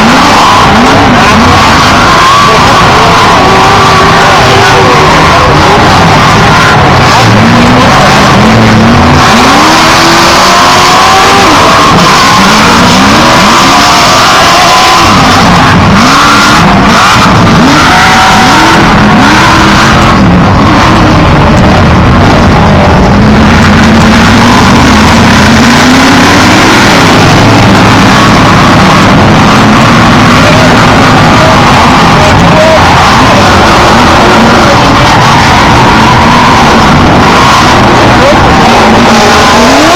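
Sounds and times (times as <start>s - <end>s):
race truck engines at full throttle: 0.0s - 39.9s.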